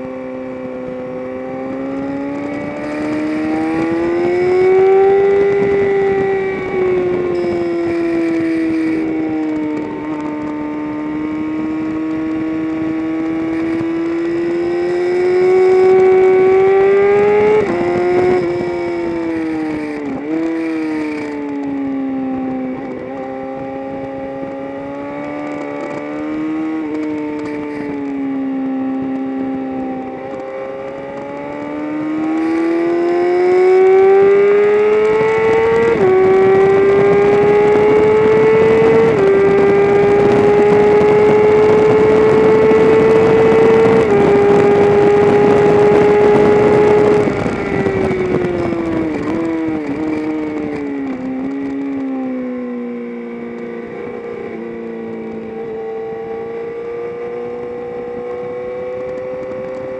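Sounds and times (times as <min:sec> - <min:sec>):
race engine accelerating: 0:00.6 - 0:59.9.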